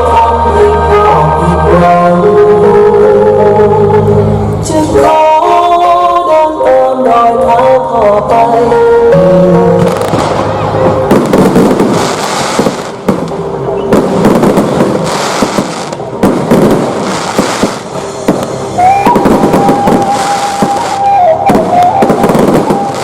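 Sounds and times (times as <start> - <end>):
held high tone: 0.0 - 11.1, 18.0 - 23.0
fireworks cracking and banging: 9.7 - 23.0.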